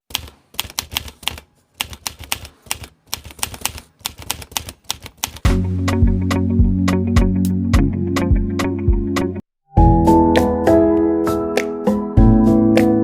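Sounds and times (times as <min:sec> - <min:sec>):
typewriter-style typing clicks: 0:00.1 - 0:05.5
music with bass line and beat: 0:05.5 - 0:13.0.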